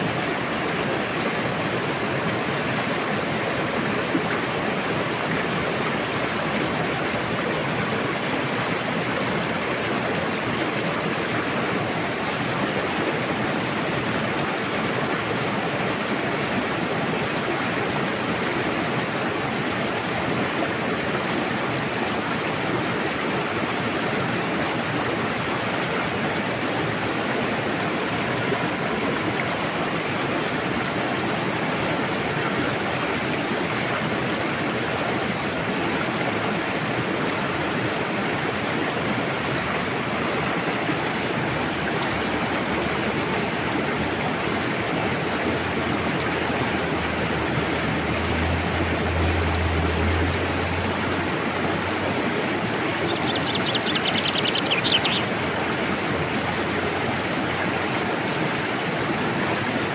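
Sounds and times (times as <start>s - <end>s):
river rushing: 0.0s - 59.9s.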